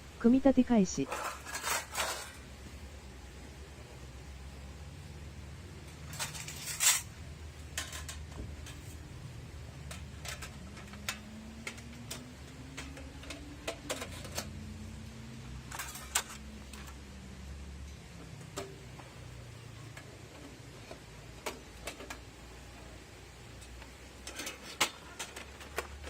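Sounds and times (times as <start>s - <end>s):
metal stove parts clinking: 1.1s - 2.4s, 5.9s - 8.8s, 15.7s - 17.0s, 24.2s - 25.9s.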